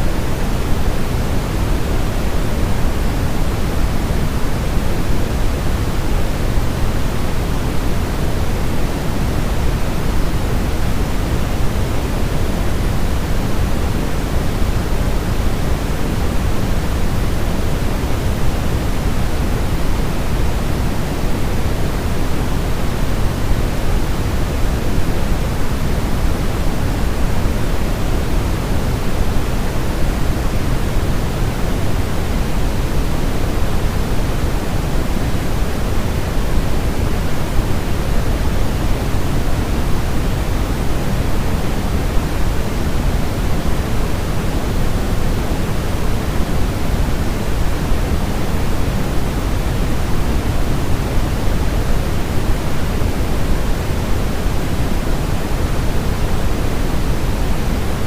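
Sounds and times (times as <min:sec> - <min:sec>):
steady synthetic pink noise: 0:00.0 - 0:58.0.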